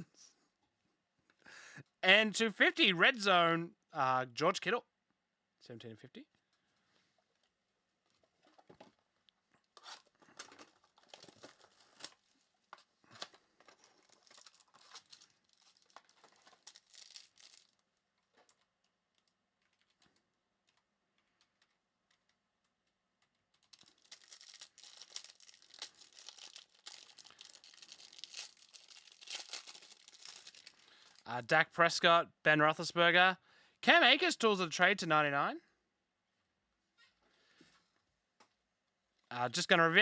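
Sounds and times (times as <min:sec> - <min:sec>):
wrappers being torn and crinkled: 0:09.8 - 0:20.8, 0:23.2 - 0:31.3.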